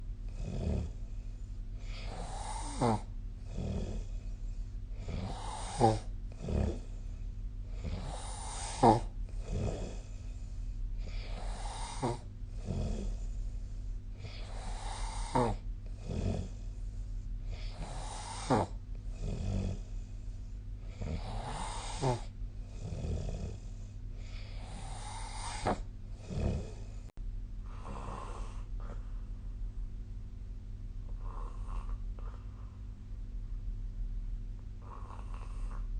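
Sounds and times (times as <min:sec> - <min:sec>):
person snoring: 0:00.3 - 0:01.1, 0:01.8 - 0:07.1, 0:07.7 - 0:10.4, 0:11.0 - 0:13.5, 0:14.2 - 0:16.7, 0:17.5 - 0:20.1, 0:20.8 - 0:27.1, 0:27.7 - 0:29.1, 0:31.1 - 0:32.8, 0:34.8 - 0:35.9
soft breathing: 0:03.9 - 0:19.1, 0:19.7 - 0:22.8, 0:23.5 - 0:29.8, 0:31.0 - 0:33.1.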